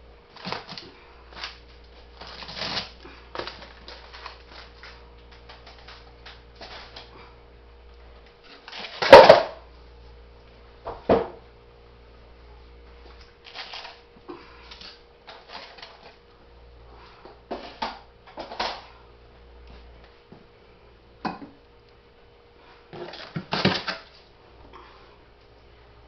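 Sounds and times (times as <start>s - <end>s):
faint steady hum: 0.0s - 26.0s
frozen food packages crinkling: 0.3s - 7.1s, 8.4s - 9.4s, 13.2s - 14.0s, 14.6s - 16.2s, 23.0s - 24.3s.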